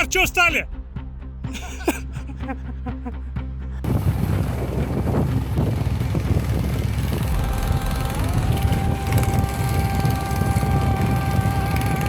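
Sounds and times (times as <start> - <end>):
engine rumbling under load: 3.0 - 12.0
wind buffeting microphone: 3.8 - 12.0.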